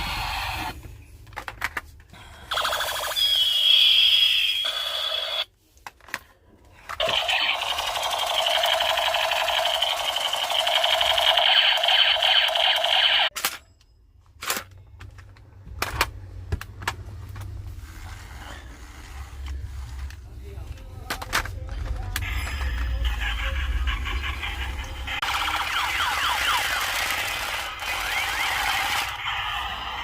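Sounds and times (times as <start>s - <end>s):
toy buzzing rattle: 7.0s - 13.3s.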